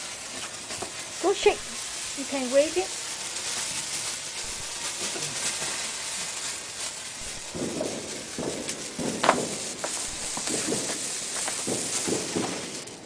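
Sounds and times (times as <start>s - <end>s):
sparkler fizzing: 0.0s - 13.0s
sharp crack: 6.5s - 13.0s.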